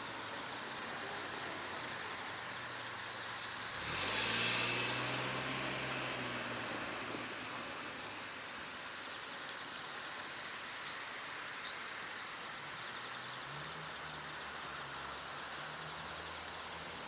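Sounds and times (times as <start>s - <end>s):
outdoor background hiss: 0.0s - 17.0s.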